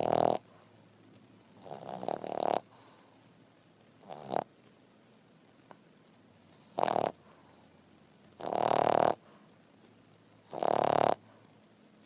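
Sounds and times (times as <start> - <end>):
dog snoring: 0.0 - 0.5, 1.6 - 2.8, 4.0 - 4.5, 6.6 - 7.2, 8.4 - 9.2, 10.4 - 11.2.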